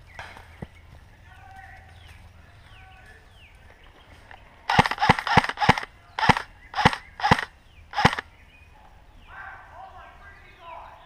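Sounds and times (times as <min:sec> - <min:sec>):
airsoft gun shots: 0:04.7 - 0:08.2.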